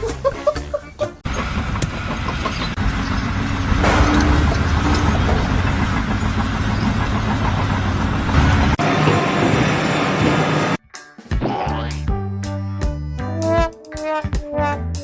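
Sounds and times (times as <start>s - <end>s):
heavy engine running: 1.2s - 10.8s.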